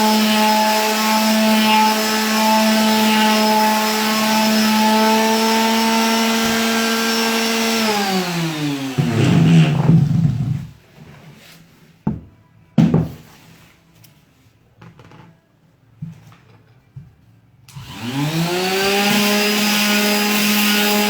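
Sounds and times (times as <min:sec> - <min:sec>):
electric sander humming: 0:00.1 - 0:09.7, 0:17.8 - 0:21.0.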